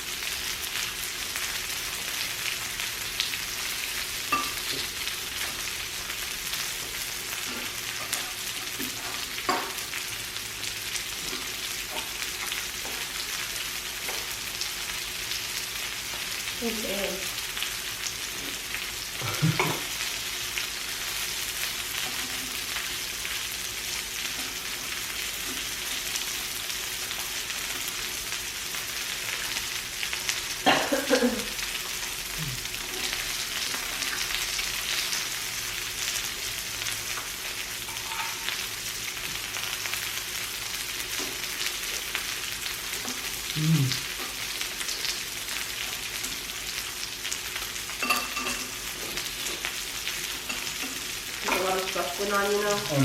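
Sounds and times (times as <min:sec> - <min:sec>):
meat sizzling on a grill: 0:00.0 - 0:53.0
short voice sounds: 0:43.5 - 0:44.0.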